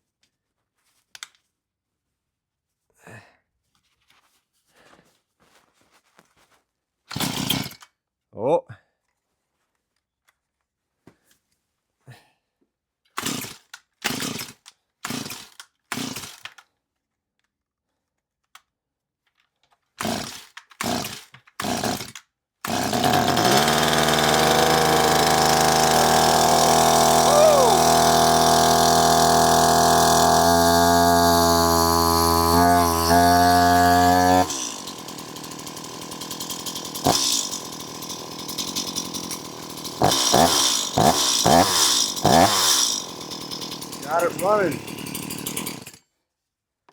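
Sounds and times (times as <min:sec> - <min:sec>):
chainsaw starter rope pulls: 0:07.1 - 0:07.9, 0:13.2 - 0:16.7, 0:20.0 - 0:46.0
chainsaw engine running: 0:20.0 - 0:22.1, 0:22.7 - 0:46.0.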